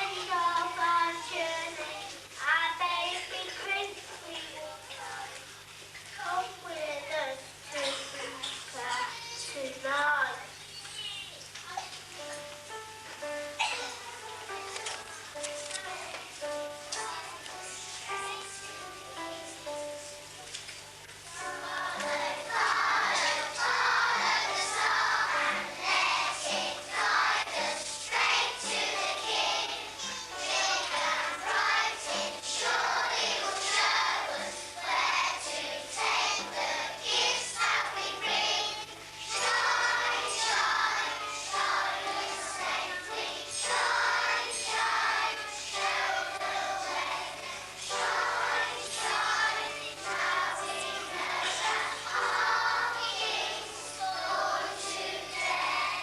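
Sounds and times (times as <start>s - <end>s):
children singing together: 0.0s - 4.0s, 21.2s - 56.0s.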